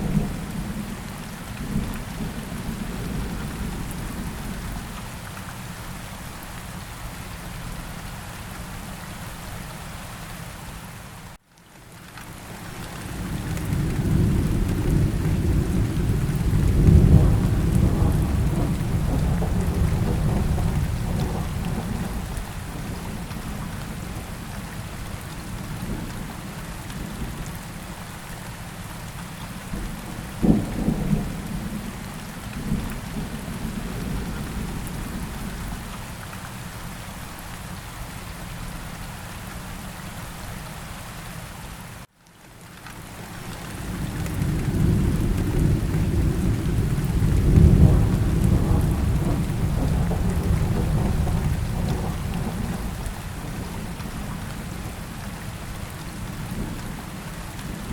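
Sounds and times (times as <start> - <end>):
steady rainfall: 0.0 - 57.9
rolling thunder rumble: 13.2 - 24.4, 29.7 - 35.9, 43.6 - 57.0
sharp thunderclap: 14.1 - 22.2, 44.3 - 53.9.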